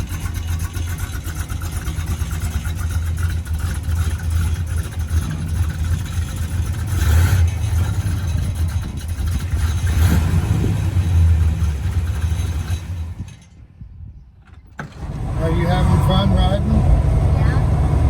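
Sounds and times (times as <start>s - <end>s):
car engine running: 0.0s - 13.4s, 14.8s - 18.0s.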